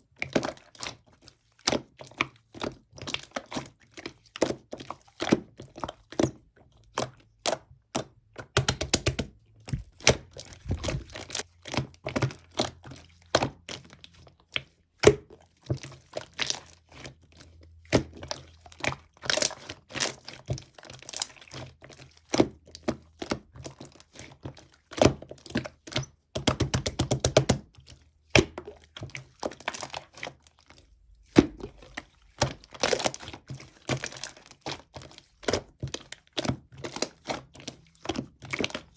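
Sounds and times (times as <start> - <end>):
slime clicking and popping: 8.4 - 11.4.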